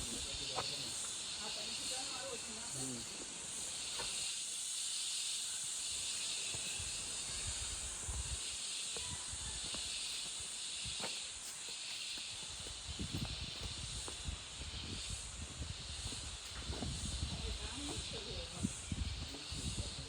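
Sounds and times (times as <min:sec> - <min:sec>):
high-pitched outdoor hiss: 0:00.0 - 0:20.0.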